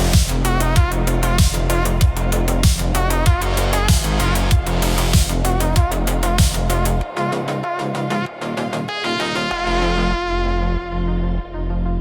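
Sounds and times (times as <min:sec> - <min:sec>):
deep bass line: 0:00.0 - 0:12.0
synthesizer melody: 0:00.0 - 0:12.0
kick drum: 0:00.2 - 0:06.7.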